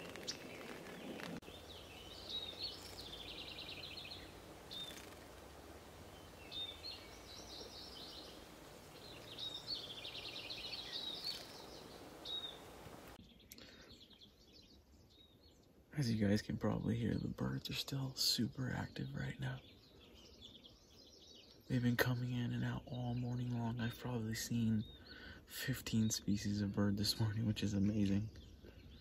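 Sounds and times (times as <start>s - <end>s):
background hiss: 0.0s - 14.5s
songbirds trilling: 0.0s - 29.0s.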